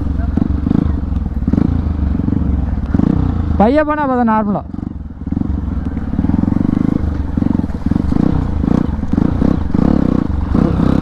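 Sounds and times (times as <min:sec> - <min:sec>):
motorcycle engine revving: 0:00.0 - 0:11.0.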